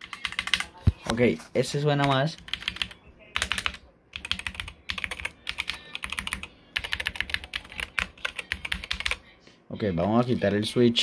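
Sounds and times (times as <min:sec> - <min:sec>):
mechanical keyboard clicking: 0:00.0 - 0:00.7, 0:02.0 - 0:09.2.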